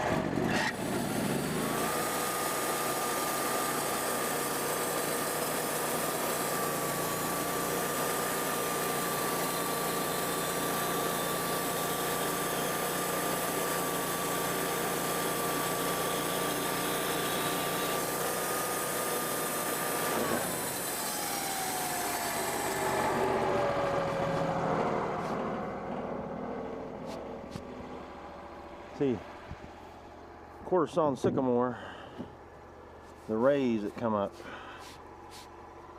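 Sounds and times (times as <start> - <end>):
band sawmill whining: 0.0 - 35.9
sawmill hiss: 0.7 - 25.6, 34.3 - 35.6.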